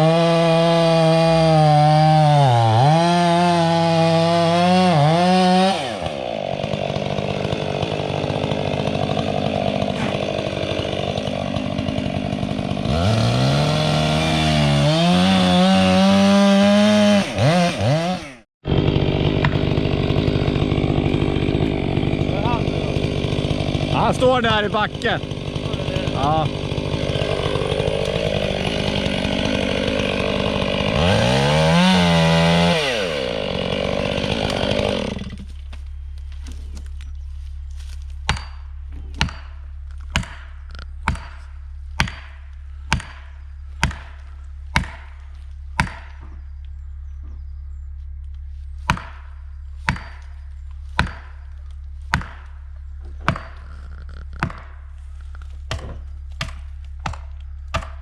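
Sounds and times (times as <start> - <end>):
chainsaw running at high revs: 0.0 - 35.5.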